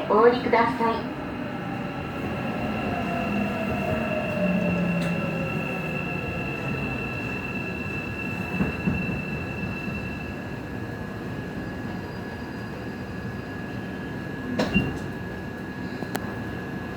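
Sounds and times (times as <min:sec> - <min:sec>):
train running noise: 0:00.0 - 0:16.9.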